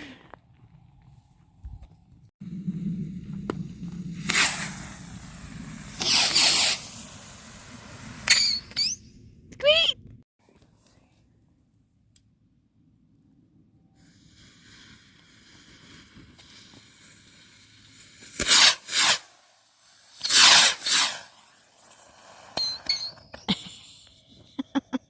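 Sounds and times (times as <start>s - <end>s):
firework hissing: 2.8s - 8.9s, 14.0s - 23.2s
loud firework bursts: 3.7s - 8.9s, 14.0s - 22.9s
small firework pops: 4.2s - 5.1s, 18.2s - 19.3s.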